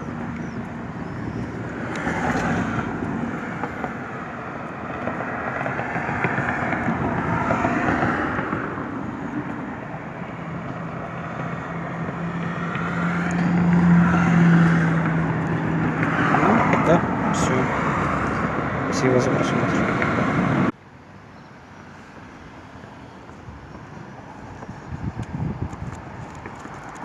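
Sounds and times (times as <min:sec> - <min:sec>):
low engine hum: 0:00.0 - 0:20.8
traffic passing by: 0:00.0 - 0:27.0.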